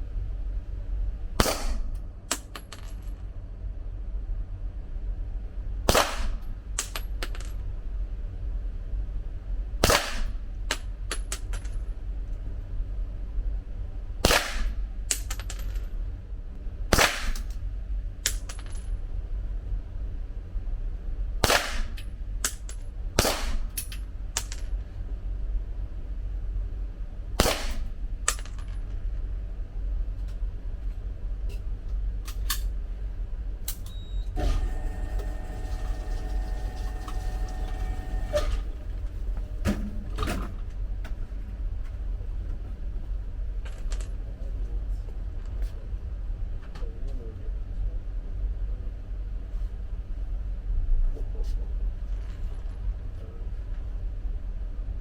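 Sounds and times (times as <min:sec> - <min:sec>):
pistol shots: 0:01.4 - 0:02.0, 0:05.9 - 0:06.5, 0:09.8 - 0:10.3, 0:14.2 - 0:14.8, 0:16.9 - 0:17.4, 0:21.4 - 0:22.0, 0:23.2 - 0:23.7, 0:27.4 - 0:27.9.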